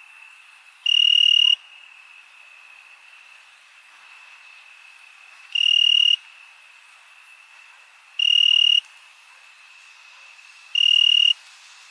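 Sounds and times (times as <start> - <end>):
close cricket trilling: 0.0 - 7.5, 8.2 - 8.9, 10.4 - 11.4
cricket chorus drone: 0.0 - 11.4.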